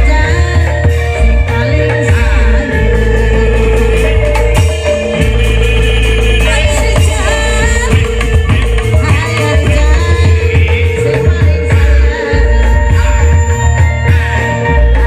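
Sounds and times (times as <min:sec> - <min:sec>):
heavy bass line: 0:00.0 - 0:15.0
loud music with singing: 0:00.0 - 0:15.0.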